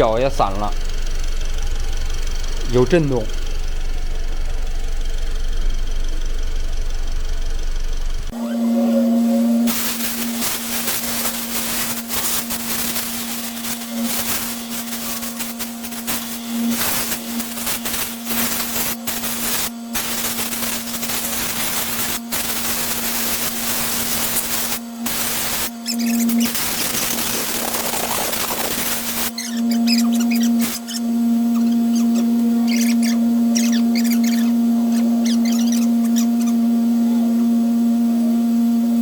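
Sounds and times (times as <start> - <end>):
steady hum: 0.0 - 39.0
high-pressure water spray hissing: 9.6 - 36.6.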